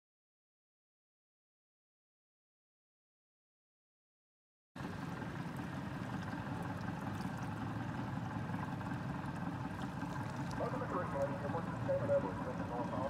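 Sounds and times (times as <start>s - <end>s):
boat motor humming: 4.8s - 13.0s
water rushing past hull: 4.8s - 13.0s.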